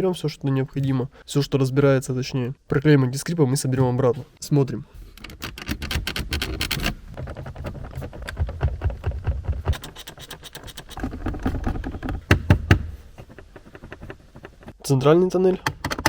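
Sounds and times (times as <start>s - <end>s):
plastic trim rattling and creaking: 5.2s - 16.0s.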